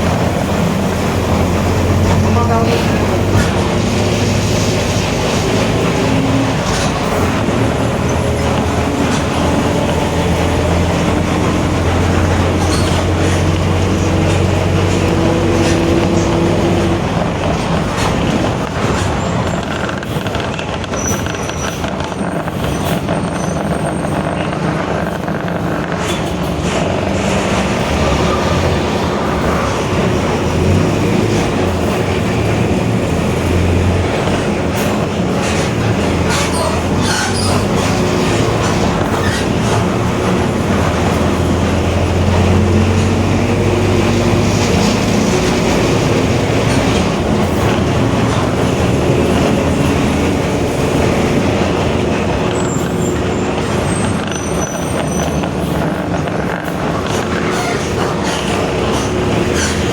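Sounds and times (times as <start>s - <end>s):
bus diesel engine drone: 0.0s - 59.9s.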